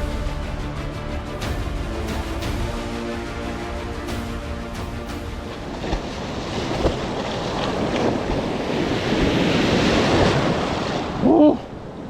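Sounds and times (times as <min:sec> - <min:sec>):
ocean surf breaking: 0:00.0 - 0:12.0
wind buffeting microphone: 0:05.2 - 0:12.0.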